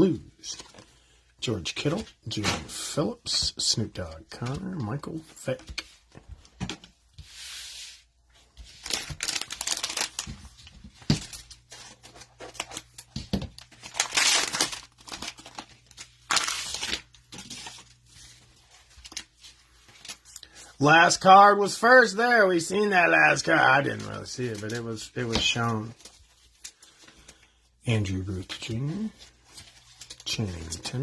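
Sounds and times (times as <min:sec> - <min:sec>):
cellophane wrapper tearing: 0:08.8 - 0:10.4, 0:11.2 - 0:17.8.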